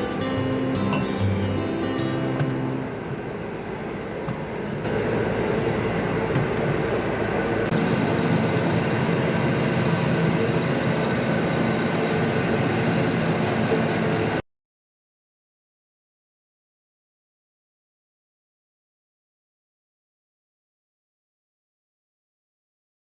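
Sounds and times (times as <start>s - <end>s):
machinery running: 0.0s - 14.4s.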